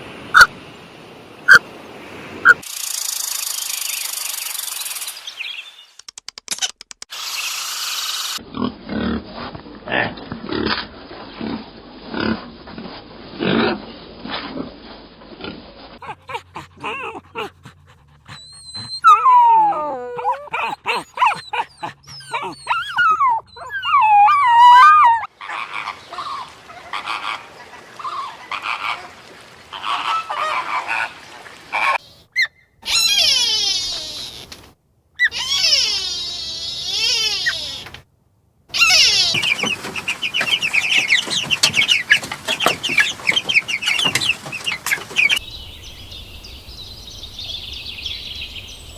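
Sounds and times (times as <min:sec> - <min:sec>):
animal calls: 0:18.3 - 0:34.6, 0:35.2 - 0:38.0, 0:38.7 - 0:48.9
high wavering sliding calls: 0:32.8 - 0:34.6, 0:35.2 - 0:37.9, 0:38.7 - 0:41.5.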